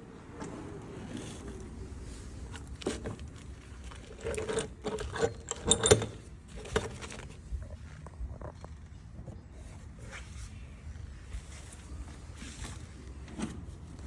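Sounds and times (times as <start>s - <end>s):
metallic clatter of objects handled: 2.5s - 7.4s.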